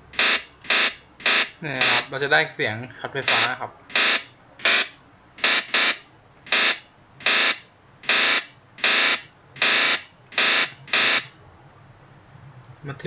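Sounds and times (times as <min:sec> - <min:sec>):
harsh electric buzzes: 0:00.0 - 0:02.1, 0:03.2 - 0:11.3.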